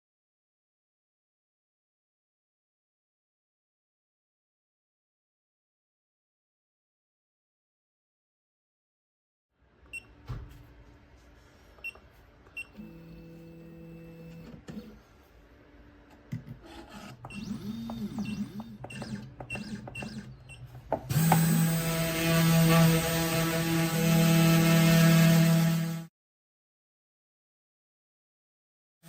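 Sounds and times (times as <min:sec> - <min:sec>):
spindle motor humming: 0:12.7 - 0:15.1, 0:16.3 - 0:26.0
stepper motors whining: 0:16.3 - 0:26.0.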